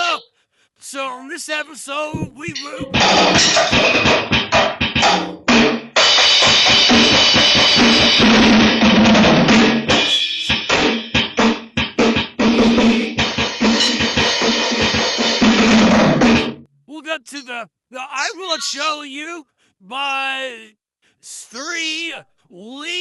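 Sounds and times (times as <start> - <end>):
drum kit played fast: 2.1 - 16.5.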